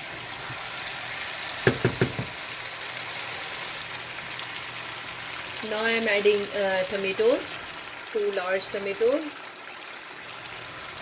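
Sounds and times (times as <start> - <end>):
food sizzling in a pot: 0.0 - 11.0
quick knocks: 1.6 - 2.4.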